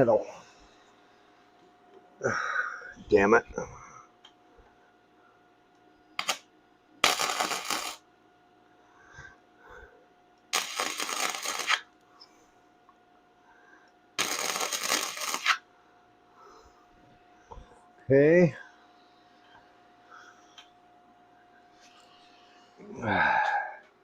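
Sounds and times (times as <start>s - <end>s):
faint steady hum: 0.0s - 24.0s
arc welding crackling: 6.2s - 8.1s, 10.5s - 12.0s, 14.2s - 15.6s.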